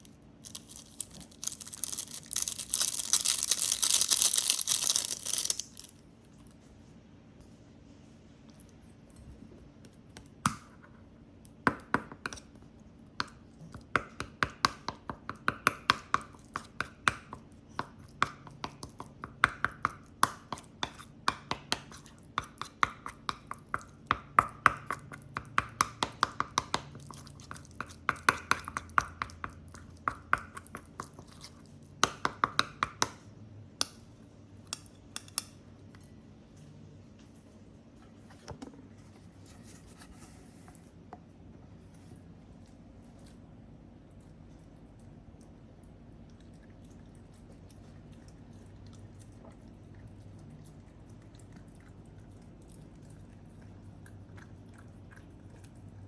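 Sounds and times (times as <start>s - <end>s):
dog crunching dry food: 0.4s - 6.0s.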